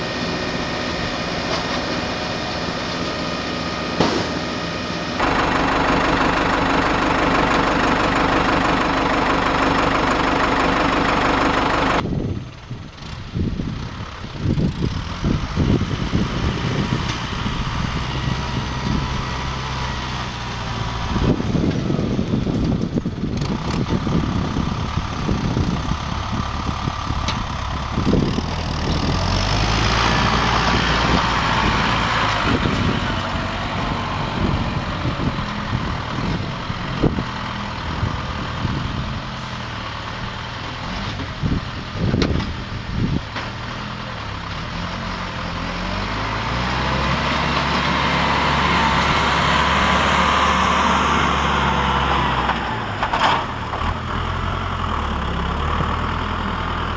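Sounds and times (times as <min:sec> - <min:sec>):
diesel engine running: 0:00.0 - 0:56.9.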